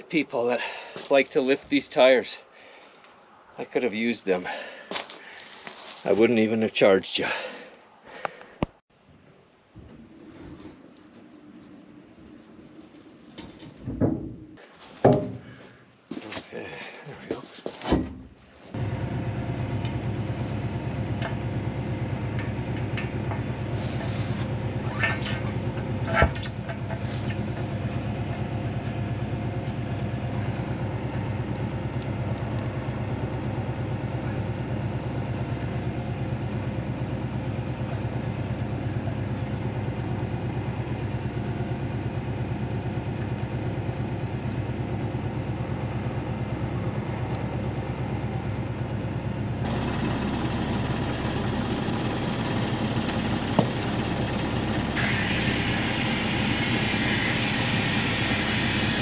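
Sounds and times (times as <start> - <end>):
engine droning: 18.7 - 59.0.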